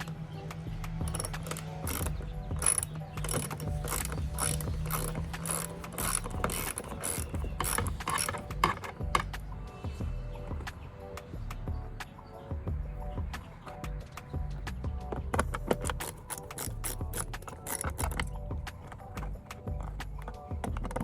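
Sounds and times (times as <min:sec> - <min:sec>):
hand ratchet clicking: 0:00.8 - 0:09.4, 0:15.1 - 0:21.0.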